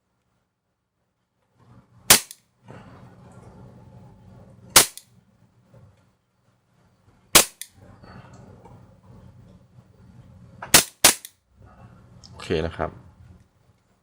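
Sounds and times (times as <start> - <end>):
airsoft pistol shots: 2.1 - 2.4, 4.8 - 5.0, 7.4 - 7.7, 10.7 - 11.3.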